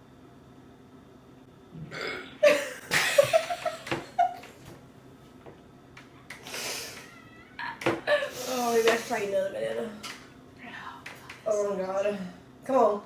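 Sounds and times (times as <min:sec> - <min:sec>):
woman burping: 0:01.8 - 0:03.0.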